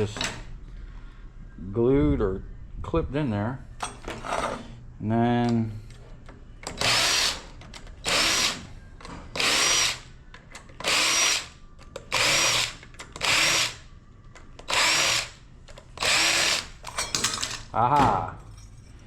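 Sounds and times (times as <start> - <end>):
power drill whining: 6.8 - 7.4, 8.0 - 8.7, 9.4 - 10.0, 10.8 - 11.5, 12.1 - 13.8, 14.7 - 15.4, 16.0 - 16.7.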